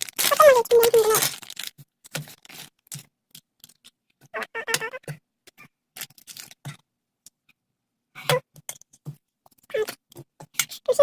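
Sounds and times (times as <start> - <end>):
plastic wrapper crinkling: 0.0 - 4.0, 6.0 - 6.8.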